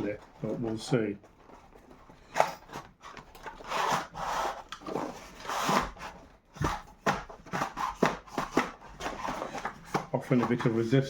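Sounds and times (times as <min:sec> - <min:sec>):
box packaging scraping: 0:00.0 - 0:11.0.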